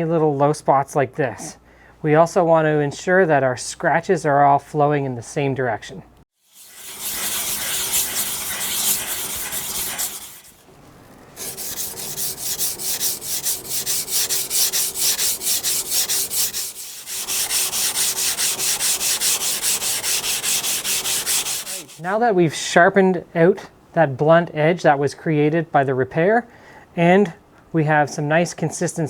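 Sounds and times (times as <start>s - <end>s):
knife grinding on whetstone: 6.5s - 10.7s, 11.4s - 22.1s.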